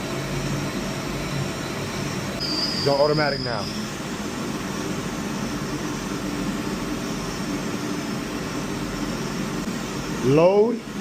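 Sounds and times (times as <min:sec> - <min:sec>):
boiler burner flame and blower: 0:00.0 - 0:11.0.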